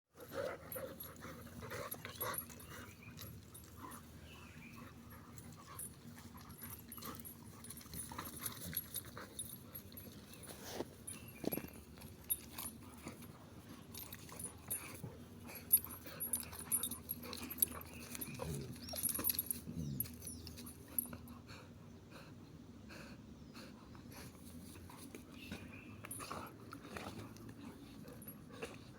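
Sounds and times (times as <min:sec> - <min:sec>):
puppies whining: 0:00.3 - 0:21.3.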